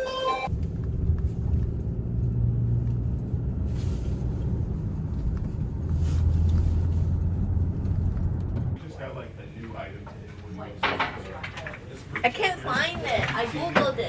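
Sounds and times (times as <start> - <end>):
car interior rumble: 0.5 - 8.8.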